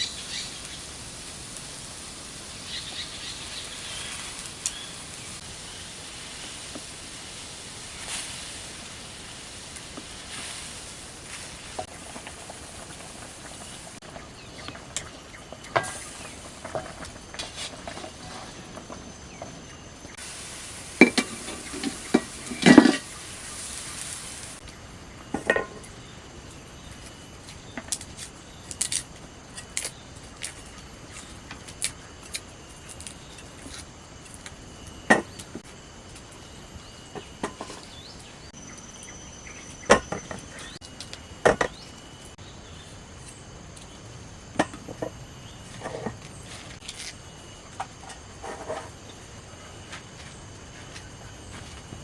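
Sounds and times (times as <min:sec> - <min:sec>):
hiss: 0:00.0 - 0:19.4, 0:20.1 - 0:24.8
insects chirping: 0:00.0 - 0:52.0
kitchen utensils clinking: 0:21.0 - 0:23.2.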